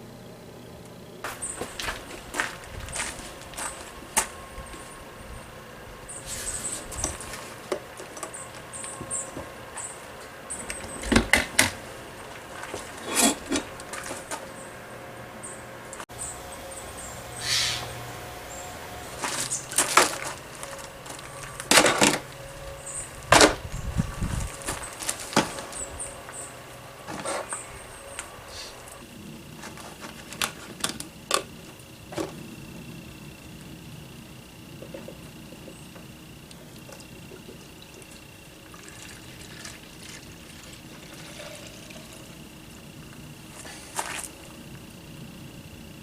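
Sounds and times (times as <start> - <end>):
short scrape or rustle: 6.2 - 7.5, 17.4 - 17.9.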